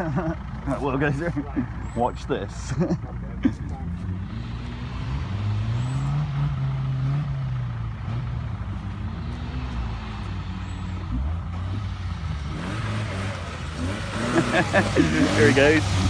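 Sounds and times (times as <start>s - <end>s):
car engine revving: 3.5s - 16.0s.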